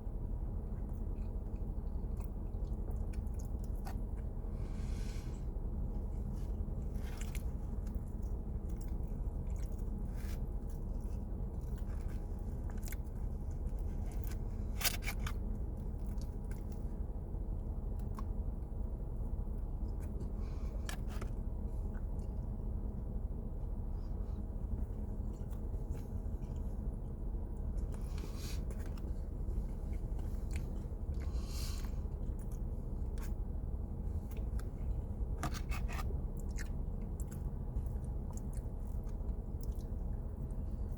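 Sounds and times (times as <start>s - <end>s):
steady low hum: 0.0s - 40.9s
person chewing and biting: 34.4s - 39.9s.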